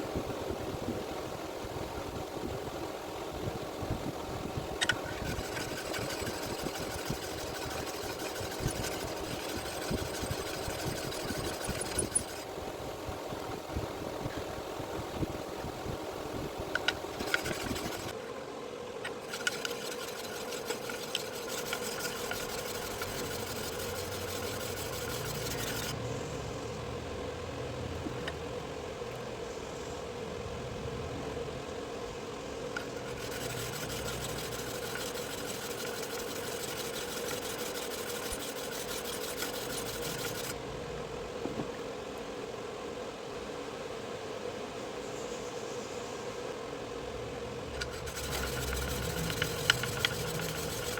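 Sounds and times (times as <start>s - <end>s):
sharpening grinder humming: 4.8s - 12.5s, 16.7s - 18.2s, 19.1s - 25.9s, 32.8s - 40.6s, 47.8s - 50.9s.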